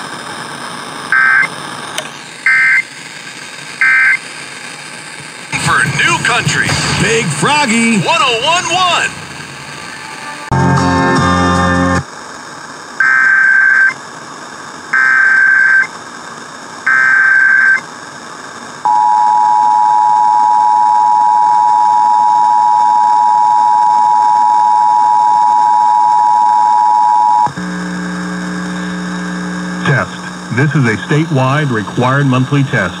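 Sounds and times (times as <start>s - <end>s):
data burst tones: 1.1s - 1.5s, 2.4s - 3.0s, 3.8s - 4.3s, 13.0s - 14.0s, 15.0s - 15.9s, 16.9s - 17.8s.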